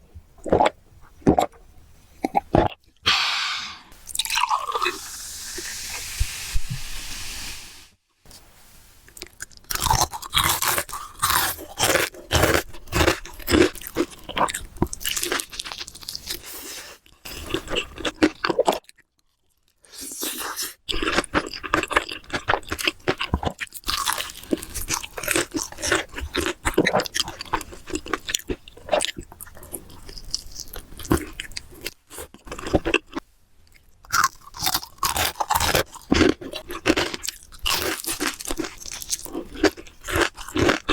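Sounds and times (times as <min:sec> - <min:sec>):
crunchy chewing of fried chicken: 0:09.2 - 0:40.9.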